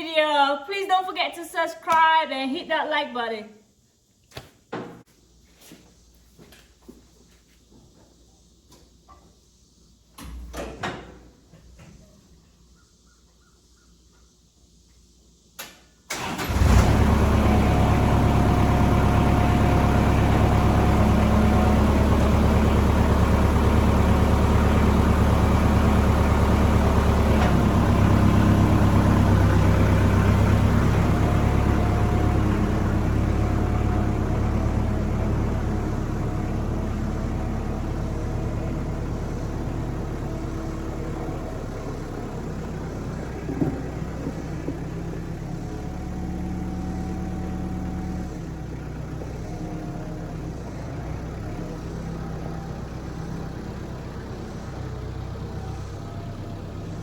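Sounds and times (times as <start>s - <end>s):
engine starting and idling: 15.6s - 57.0s.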